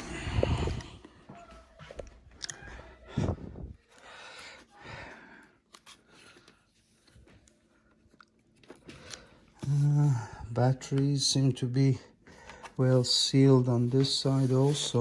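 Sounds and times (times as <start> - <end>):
soft breaths: 0.0 - 8.1
handling noises with clicks: 5.6 - 9.6.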